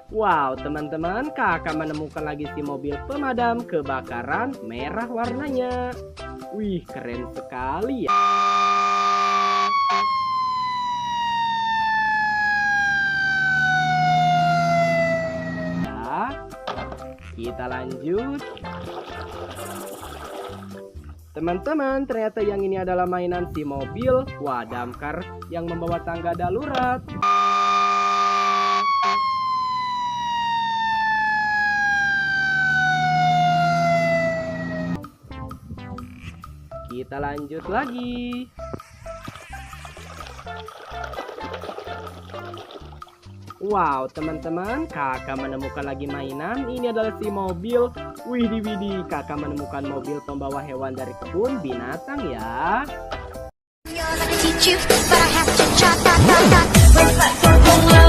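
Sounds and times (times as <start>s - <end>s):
fire engine siren: 8.1s - 15.9s, 27.2s - 35.0s.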